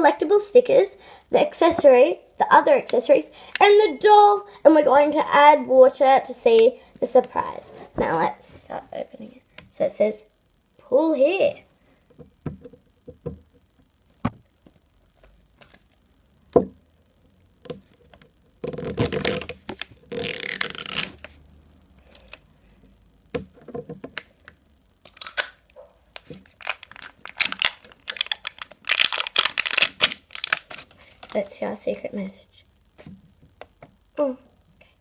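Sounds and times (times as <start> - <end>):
small packaging clicks: 14.6 - 16.0, 23.4 - 31.6
plastic packaging crinkling: 18.6 - 21.3, 25.1 - 25.6, 26.2 - 31.6
plastic wrapping tearing: 18.6 - 21.3, 25.1 - 25.6, 26.2 - 31.4.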